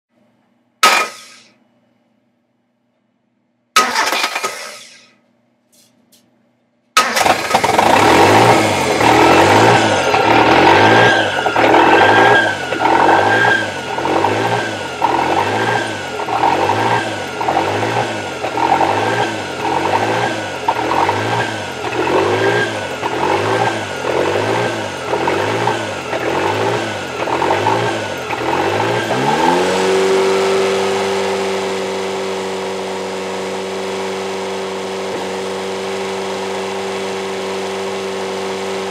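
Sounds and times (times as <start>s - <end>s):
car engine starting: 3.8s - 5.1s, 7.0s - 38.9s
engine hunting idle: 7.0s - 31.1s.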